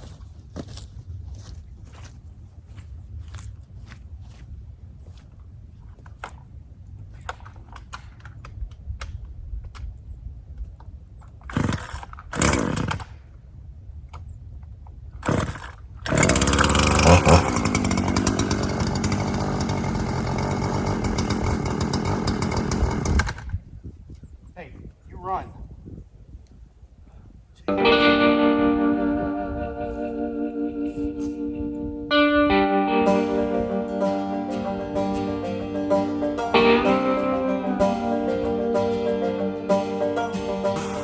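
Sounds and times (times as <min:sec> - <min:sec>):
chainsaw starter cord pulls: 0:11.4 - 0:13.2, 0:15.2 - 0:23.6
chainsaw engine running: 0:11.5 - 0:13.0, 0:15.3 - 0:23.5.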